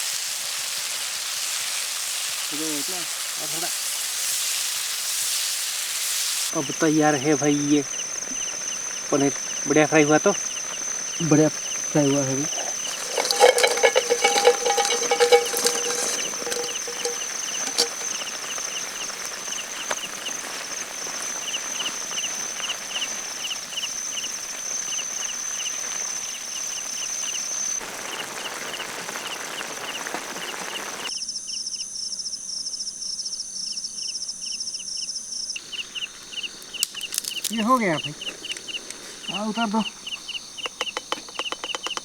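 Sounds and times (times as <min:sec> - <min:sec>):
hiss: 0:00.0 - 0:08.9
crickets chirping: 0:06.5 - 0:31.5, 0:33.3 - 0:42.0
high-pitched insect trill: 0:35.6 - 0:42.0.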